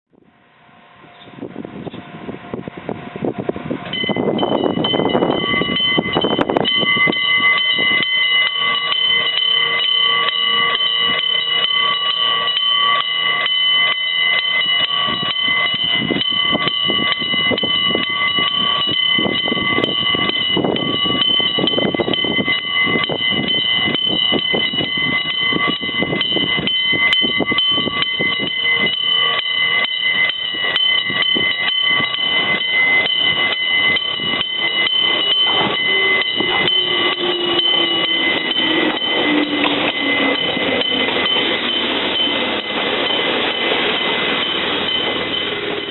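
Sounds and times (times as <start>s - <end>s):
level crossing warning bell ringing: 0.2s - 45.9s.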